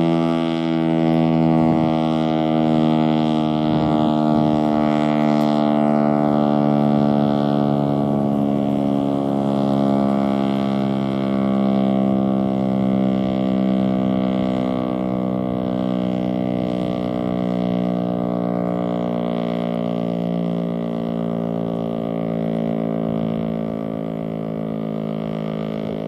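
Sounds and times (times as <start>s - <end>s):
warning siren wailing: 0.0s - 26.0s.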